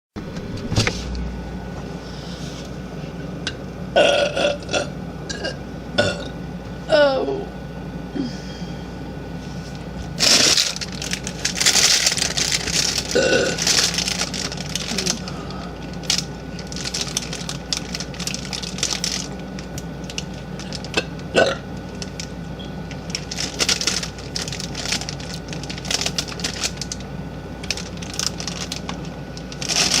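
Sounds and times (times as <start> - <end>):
low hum: 0.2 - 30.0
girl burping: 13.2 - 13.6.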